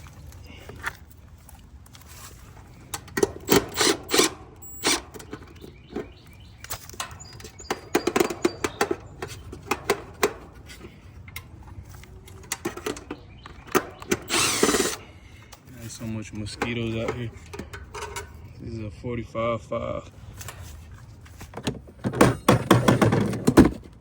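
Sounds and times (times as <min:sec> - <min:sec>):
objects clicking and rattling: 0:16.5 - 0:18.6.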